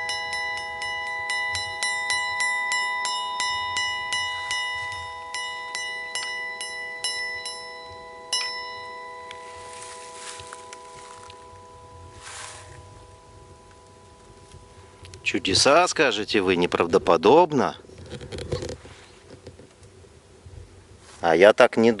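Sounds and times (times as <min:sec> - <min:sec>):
bell struck repeatedly: 0:00.0 - 0:16.4.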